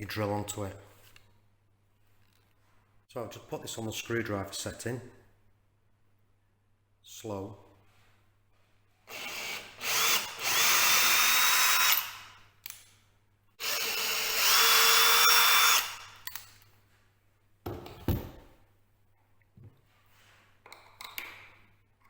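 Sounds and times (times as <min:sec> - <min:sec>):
power drill whining: 0:09.1 - 0:12.3, 0:13.6 - 0:16.3.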